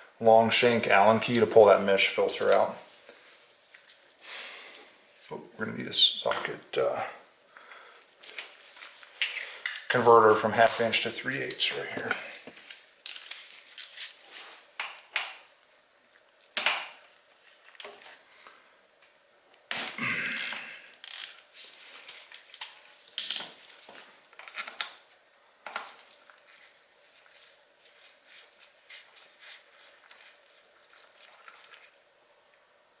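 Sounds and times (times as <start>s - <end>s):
metal tools clicking and clinking: 2.4s - 2.8s, 10.7s - 12.2s
metal tools rattling: 2.4s - 2.8s.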